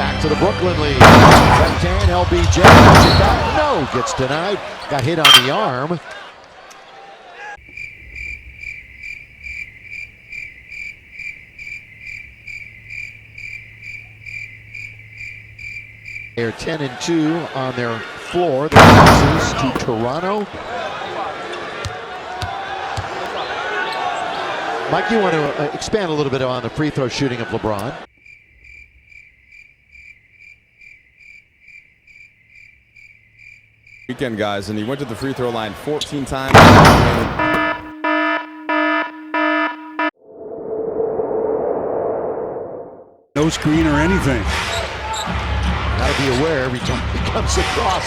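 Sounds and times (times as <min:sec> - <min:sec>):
cricket chirping: 0:07.6 - 0:16.4, 0:28.1 - 0:34.1.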